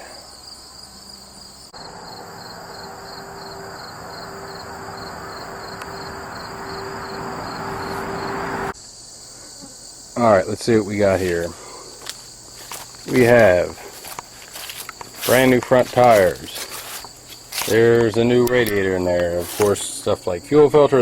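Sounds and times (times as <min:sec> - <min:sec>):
crickets chirping: 0:00.0 - 0:21.0.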